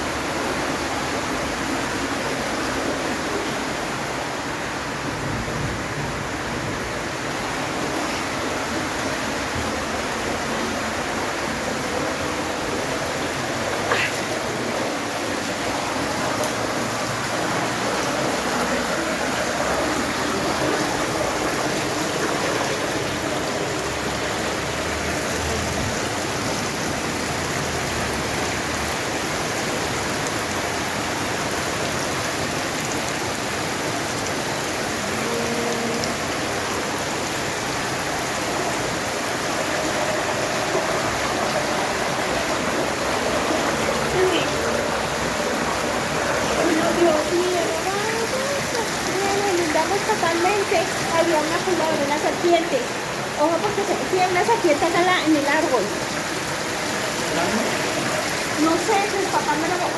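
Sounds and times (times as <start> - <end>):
heavy rain: 0.0 - 59.9
running water: 0.0 - 59.9.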